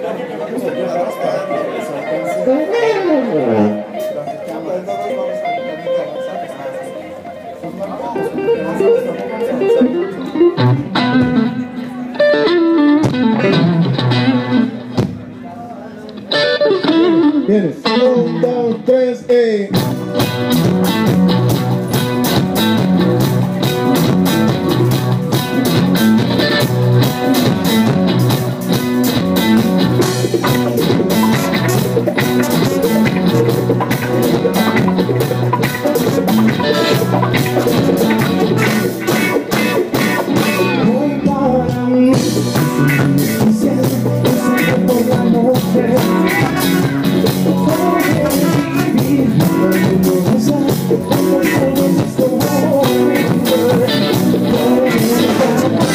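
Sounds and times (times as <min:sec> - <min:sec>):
live rock band playing: 0:00.0 - 0:55.9
drum kit beat: 0:19.7 - 0:55.9.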